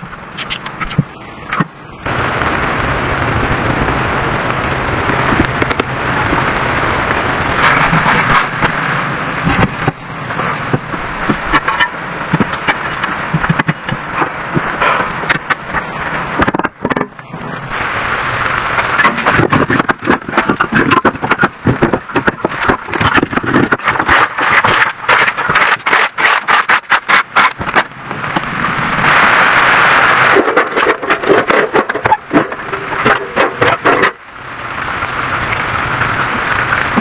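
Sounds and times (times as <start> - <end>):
sharp knocks and clatter: 0.0 - 1.8, 7.6 - 8.8, 9.4 - 17.4, 18.8 - 28.5, 30.3 - 34.2
steady scraping: 5.1 - 17.8, 18.5 - 34.2.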